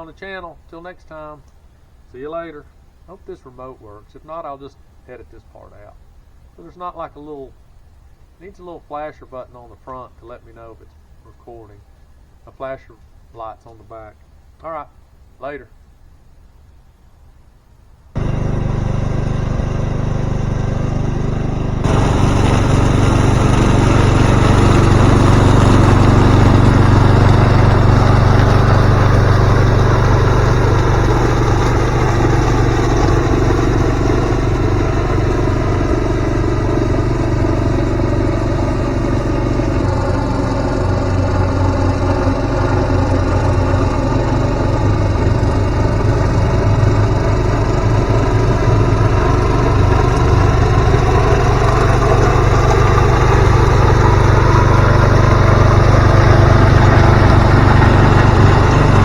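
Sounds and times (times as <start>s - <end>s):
mower engine running: 18.2s - 59.0s.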